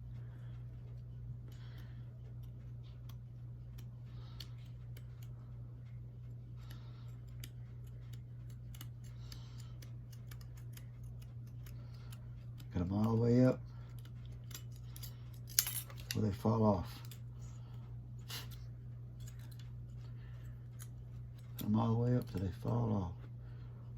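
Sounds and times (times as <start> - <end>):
steady low hum: 0.0 - 23.9
scissors cutting thin metal: 7.1 - 13.3, 13.9 - 16.2.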